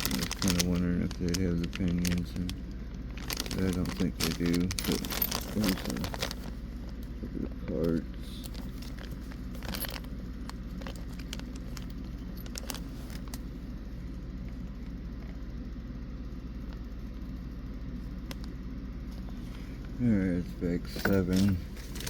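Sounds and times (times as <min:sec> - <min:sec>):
plastic parts clicking and rattling: 0:00.0 - 0:06.5, 0:08.4 - 0:13.4
steady low hum: 0:00.0 - 0:22.0.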